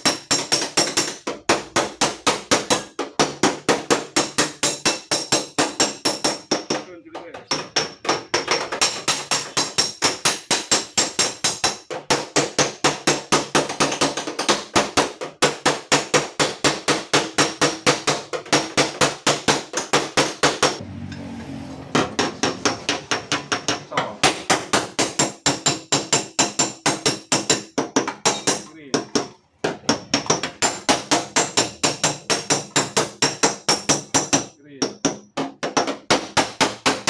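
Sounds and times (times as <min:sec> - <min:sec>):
hammer blows on sheet metal: 0:21.8 - 0:37.0.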